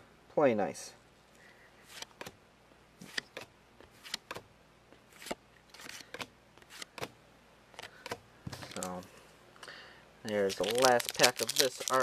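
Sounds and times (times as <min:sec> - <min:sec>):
trading cards clicking and snapping: 0:03.0 - 0:04.4, 0:05.2 - 0:07.1, 0:10.3 - 0:12.0
card rustle: 0:07.8 - 0:09.1, 0:10.2 - 0:12.0.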